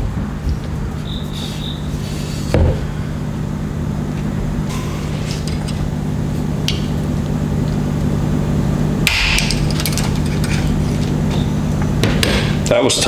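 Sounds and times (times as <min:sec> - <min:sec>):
impact wrench humming: 0:09.0 - 0:12.7.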